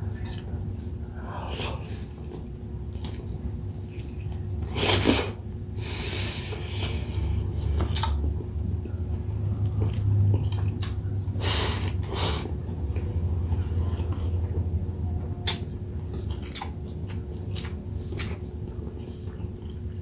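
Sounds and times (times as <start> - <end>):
person chewing and smacking: 1.6 - 5.4, 7.7 - 8.5, 9.5 - 12.2, 13.9 - 20.0.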